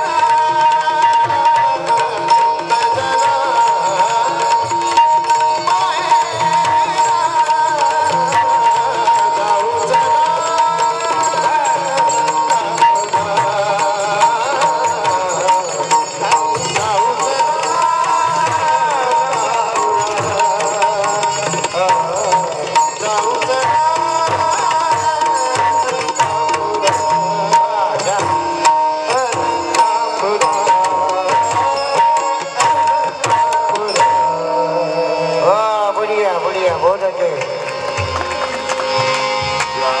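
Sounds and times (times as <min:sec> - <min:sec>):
wavering melodic line: 0:00.0 - 0:40.0
hand drumming: 0:37.4 - 0:39.8.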